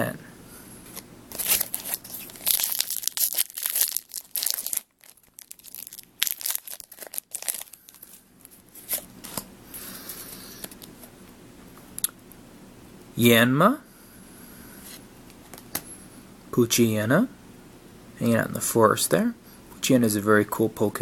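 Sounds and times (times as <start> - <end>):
foil wrapper crinkling: 1.3 - 9.4.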